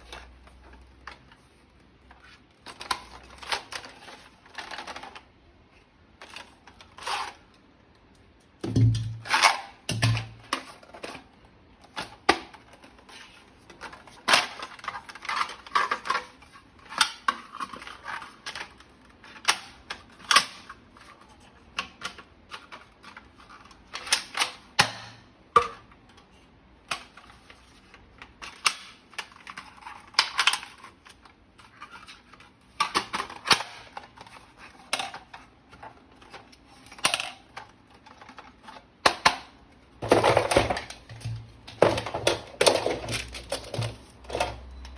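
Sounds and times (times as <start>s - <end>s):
plastic toy parts clicking: 28.2s - 41.0s.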